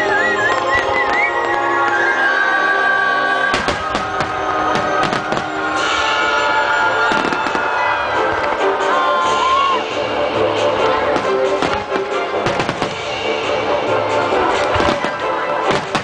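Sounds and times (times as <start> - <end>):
loud music with held notes: 0.0 - 16.0
fireworks bursting: 3.4 - 8.8, 11.0 - 13.7, 14.3 - 16.0.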